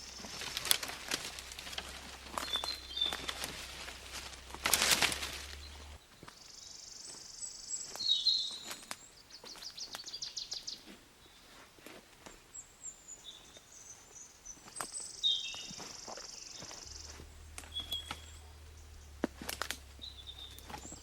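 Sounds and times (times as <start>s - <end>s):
bird trill: 0.0s - 8.8s, 14.2s - 21.0s.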